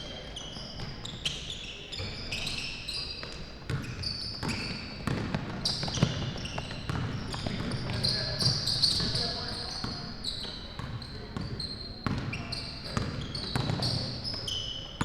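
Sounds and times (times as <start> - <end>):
sneakers squeaking on hardwood: 0.3 - 15.0
basketball dribbling thuds: 3.7 - 9.3.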